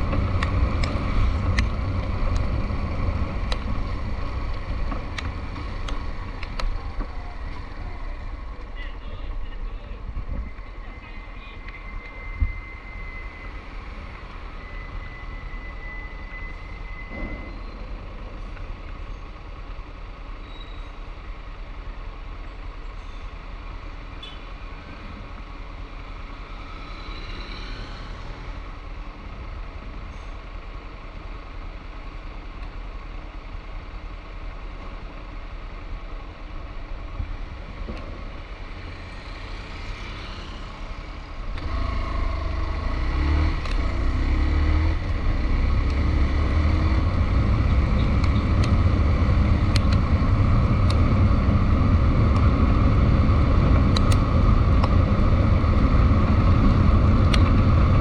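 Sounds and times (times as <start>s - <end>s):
road traffic rumble: 0.0s - 58.0s.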